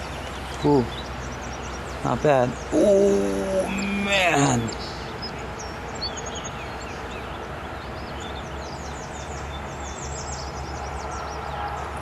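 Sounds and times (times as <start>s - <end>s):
small birds singing: 0.0s - 12.0s.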